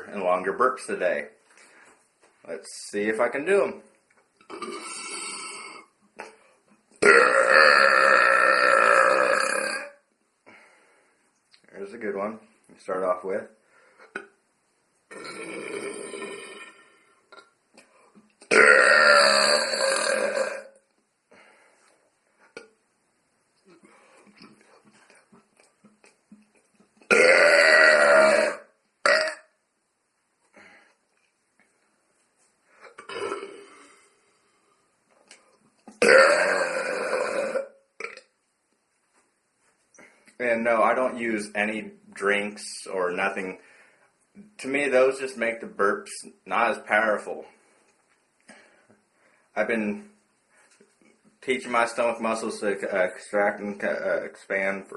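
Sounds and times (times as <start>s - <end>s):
man burping: 4.5s - 6.4s, 7.0s - 10.0s, 15.1s - 17.5s, 18.5s - 20.8s, 27.1s - 29.5s, 32.8s - 34.1s, 35.9s - 38.3s.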